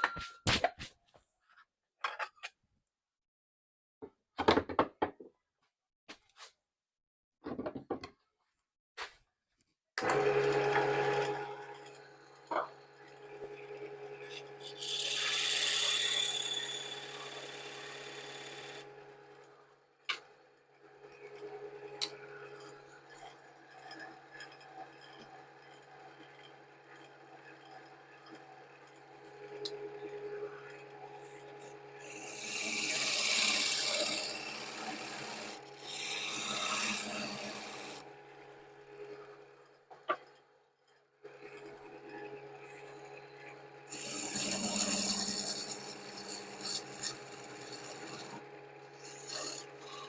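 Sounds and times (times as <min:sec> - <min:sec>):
wood lathe humming: 0:13.5 - 0:18.9, 0:31.2 - 0:38.0, 0:43.9 - 0:50.0.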